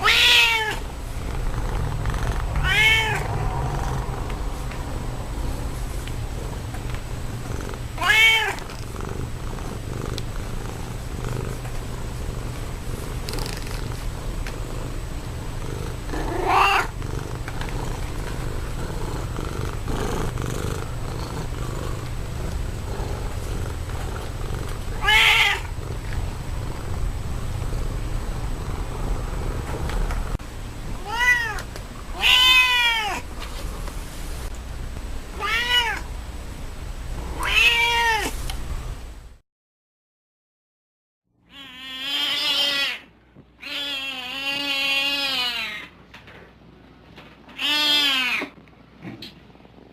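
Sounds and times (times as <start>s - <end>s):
cat meowing: 0.0s - 0.9s, 2.4s - 3.5s, 8.0s - 8.6s, 16.2s - 17.0s, 25.0s - 25.8s, 31.0s - 33.2s, 35.4s - 36.1s, 37.4s - 38.4s, 41.5s - 45.9s, 47.6s - 48.5s
low purr-like rumble: 0.7s - 30.4s.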